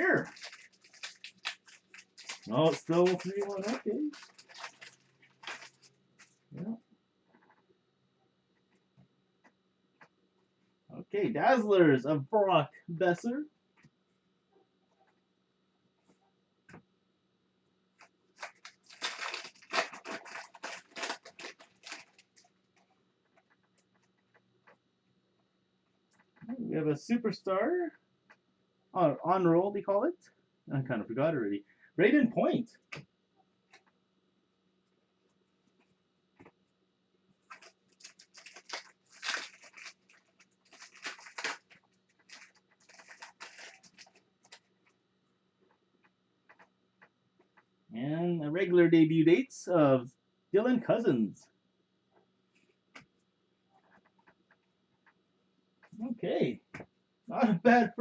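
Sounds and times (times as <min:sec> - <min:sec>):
foil wrapper tearing and crinkling: 0:00.0 - 0:06.4, 0:18.0 - 0:22.5, 0:37.5 - 0:44.7
trading cards rustling: 0:00.0 - 0:06.4, 0:18.0 - 0:22.5, 0:37.5 - 0:44.7.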